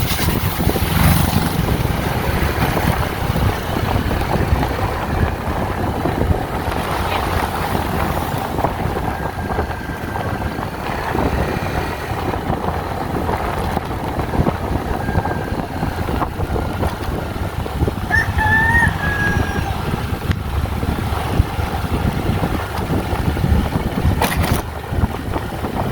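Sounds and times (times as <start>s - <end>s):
wind rumble on microphone: 0.0s - 25.9s
rooster crowing: 14.9s - 16.2s, 18.1s - 19.9s.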